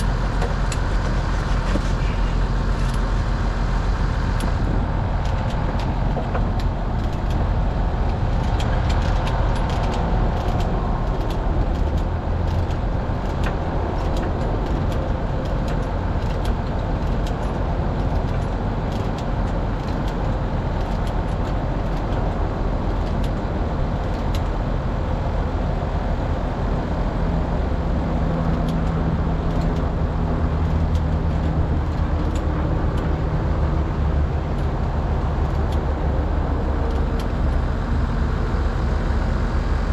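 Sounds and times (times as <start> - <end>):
excavator diesel engine running: 0.0 - 39.9
sharp clicks and clanks: 5.2 - 23.4.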